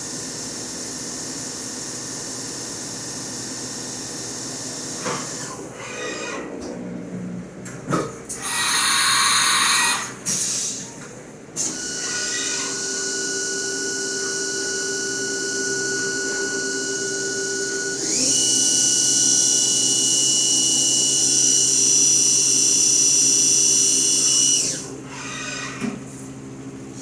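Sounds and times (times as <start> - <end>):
milling machine spindle whine: 8.4 - 10.1, 11.7 - 25.8.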